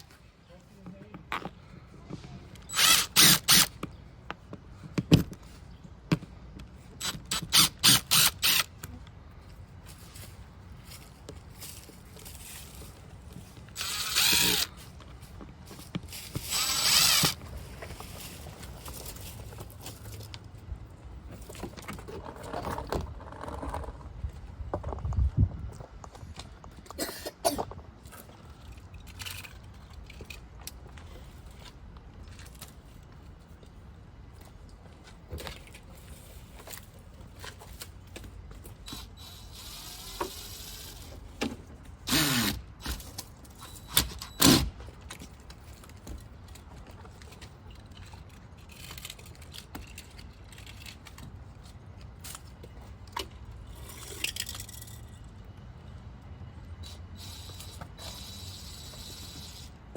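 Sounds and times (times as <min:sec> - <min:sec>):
clicks and clatter of hand work: 0:42.8 - 0:55.2.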